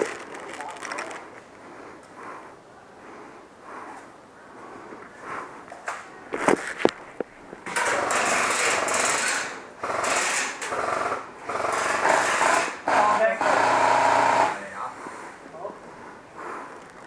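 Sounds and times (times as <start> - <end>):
airsoft machine gun rattle: 0.0 - 1.4, 7.7 - 12.8.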